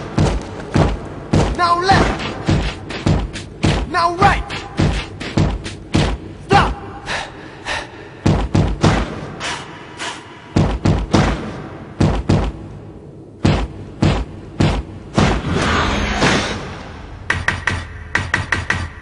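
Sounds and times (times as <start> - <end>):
feet stamping in unison: 0.0 - 6.8, 8.2 - 9.3, 10.5 - 12.6, 13.4 - 15.4.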